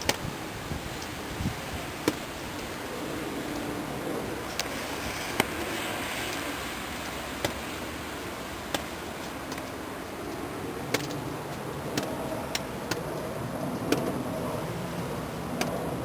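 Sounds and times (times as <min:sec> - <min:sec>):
hiss of wet snowfall: 0:00.0 - 0:11.8.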